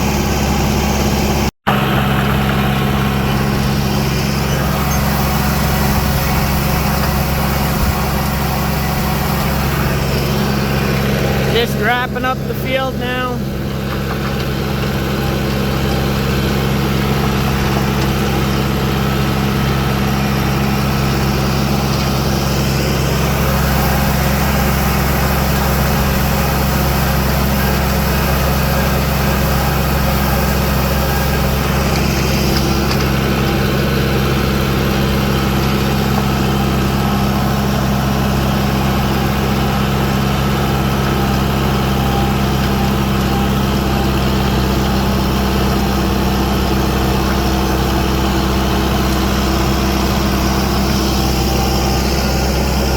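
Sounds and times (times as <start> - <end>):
tractor engine running: 0.0 - 52.9.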